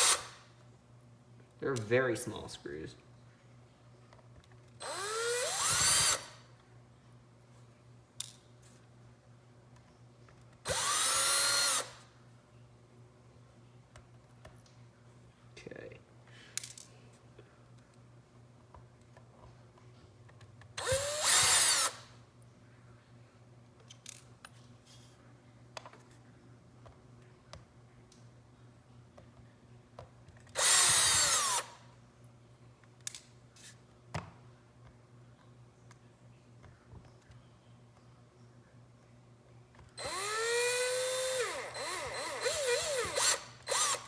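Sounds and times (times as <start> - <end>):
electric drill driving screws: 0.0 - 0.4, 4.8 - 6.4, 10.7 - 12.0, 20.8 - 22.1, 30.5 - 31.8, 40.0 - 44.0
light clicks of small parts: 16.5 - 17.0.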